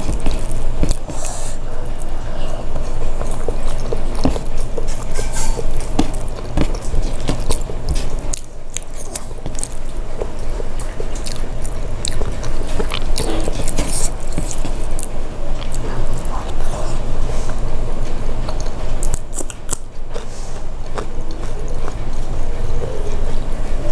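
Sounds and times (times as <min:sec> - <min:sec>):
person chewing food: 0:00.0 - 0:23.9.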